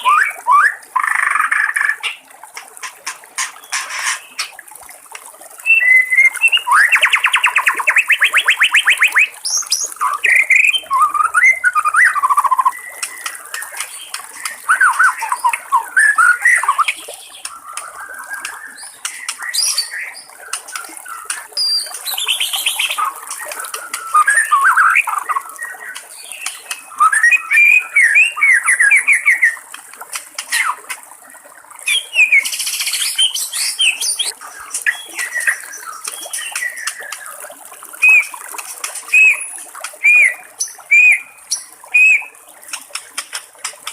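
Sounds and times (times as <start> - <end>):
bird singing whistled phrases: 0.0 - 1.4, 5.6 - 13.4, 14.4 - 17.0, 23.8 - 25.9, 26.7 - 29.6, 31.9 - 37.0, 38.0 - 38.4, 39.1 - 42.4.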